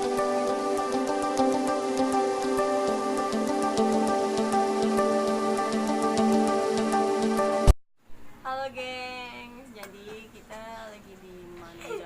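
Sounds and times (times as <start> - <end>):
music with sustained notes: 0.0 - 7.7.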